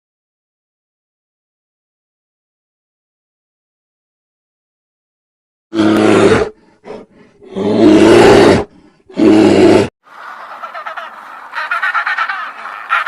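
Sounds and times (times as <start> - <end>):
large animal roaring: 5.7 - 9.9
bird squawking: 10.1 - 13.0.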